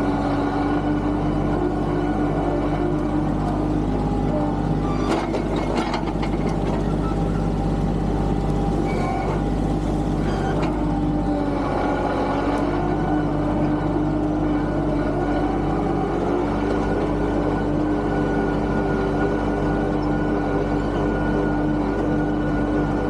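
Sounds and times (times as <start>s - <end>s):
tractor engine running: 0.0s - 23.0s.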